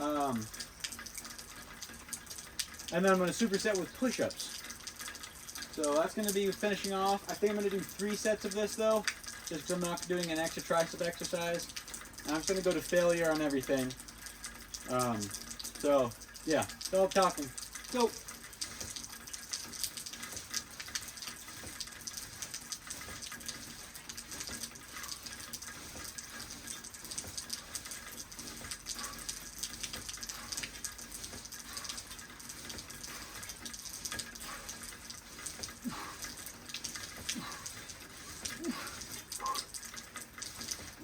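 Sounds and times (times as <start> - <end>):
raindrops pattering and dripping: 0.0 - 41.0
steady rain hiss: 0.0 - 41.0.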